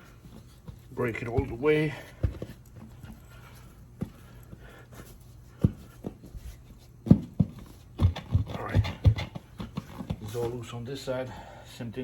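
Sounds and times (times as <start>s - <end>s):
dull knocks and thumps: 7.0s - 10.4s.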